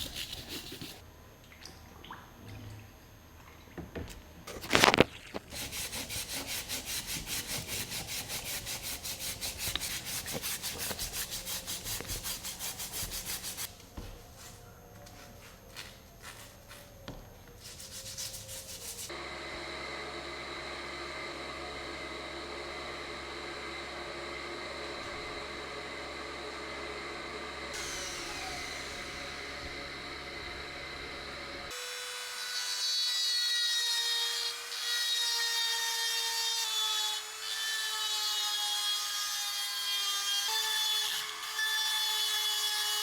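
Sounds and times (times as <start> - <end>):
hand rubbing strokes: 0.0 - 1.0, 5.6 - 19.1
small electric motor running: 17.9 - 35.4.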